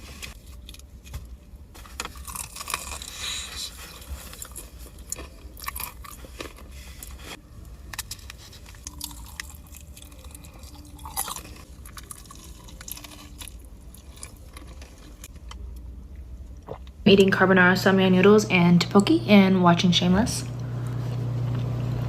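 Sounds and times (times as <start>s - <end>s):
person chewing and crunching: 1.8s - 15.6s.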